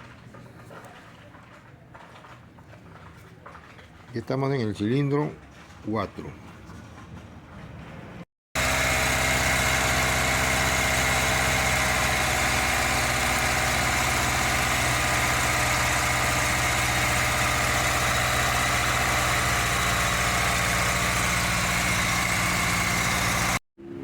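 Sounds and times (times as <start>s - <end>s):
car engine idling with misfire: 8.6s - 23.6s.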